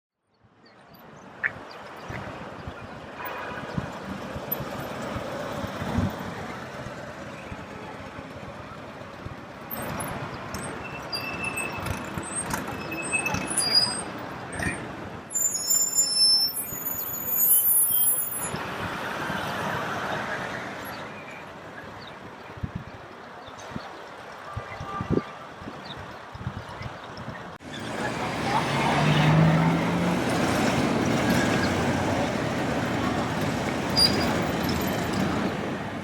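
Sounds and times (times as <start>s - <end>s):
high-pitched brake squeal: 9.7s - 18.6s, 33.9s - 35.2s
vehicles passing at low speed: 25.6s - 36.0s.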